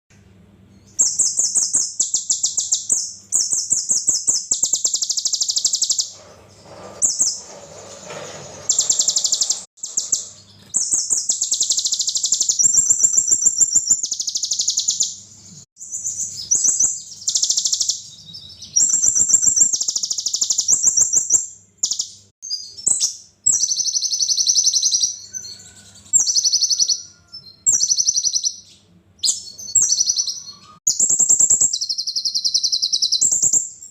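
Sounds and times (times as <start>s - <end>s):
bird singing high trills: 8.7s - 15.2s, 15.8s - 33.9s.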